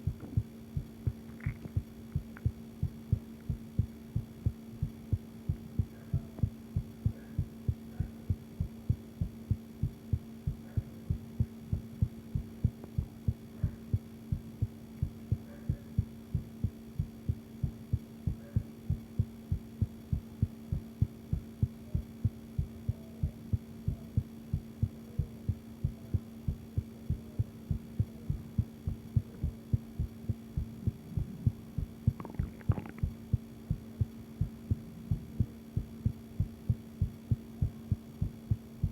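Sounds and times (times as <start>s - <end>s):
faint steady hum: 0.0s - 38.9s
heartbeat lub-dub: 0.0s - 38.9s.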